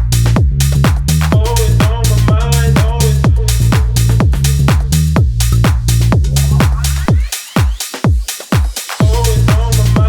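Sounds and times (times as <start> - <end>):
electronic dance music: 0.0 - 10.0
kick drum beat: 0.0 - 10.0.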